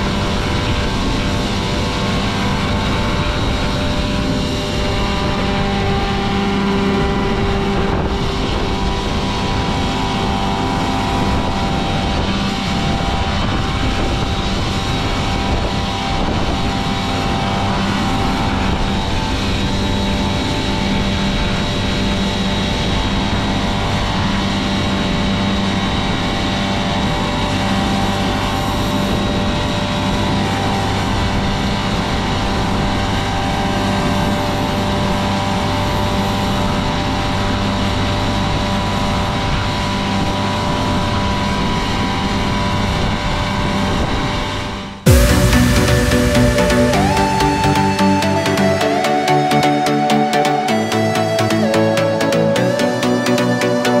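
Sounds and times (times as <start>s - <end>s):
machinery droning: 45.1s - 54.0s.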